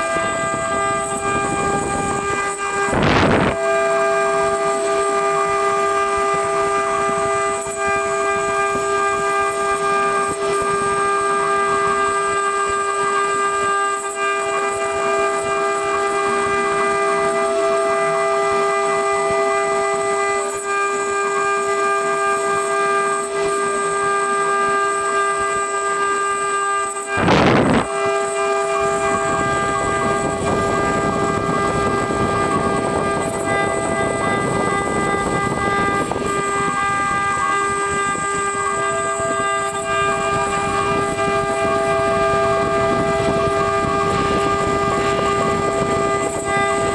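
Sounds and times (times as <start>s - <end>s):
router spindle whine: 0.0s - 46.9s
rough cutting noise: 20.2s - 46.9s
loud noise burst: 26.9s - 46.9s.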